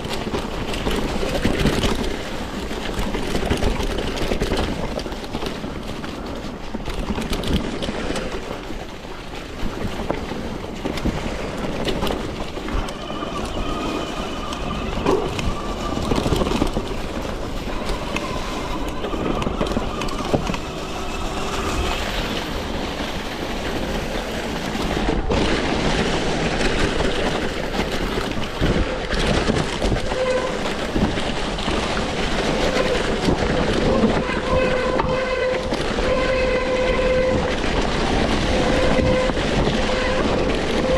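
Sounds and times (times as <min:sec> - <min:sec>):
bike rolling on rough trail: 0:00.0 - 0:40.9
wind noise: 0:00.0 - 0:40.9.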